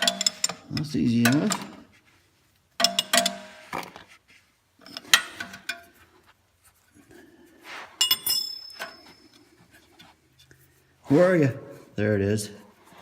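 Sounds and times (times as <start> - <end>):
wrench clinking against metal: 0.0 - 1.8, 2.8 - 3.5, 8.0 - 9.5.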